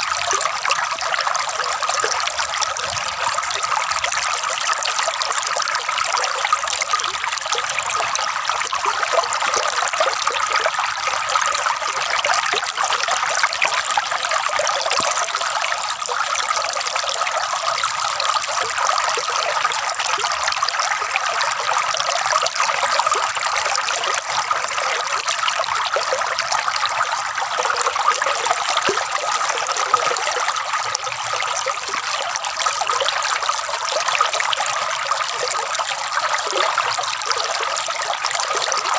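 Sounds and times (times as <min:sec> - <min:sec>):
water gurgling and trickling: 0:00.0 - 0:38.9.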